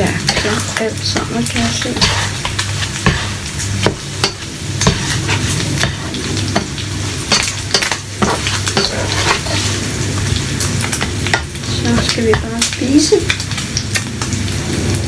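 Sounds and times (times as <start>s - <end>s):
utensil scraping a pan: 0.0s - 10.0s
bacon and eggs sizzling: 0.0s - 15.0s.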